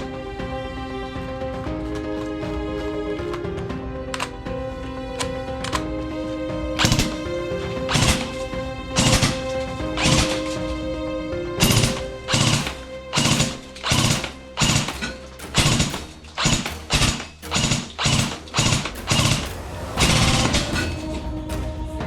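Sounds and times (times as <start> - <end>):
music with heavy beat and synth: 6.5 - 22.0.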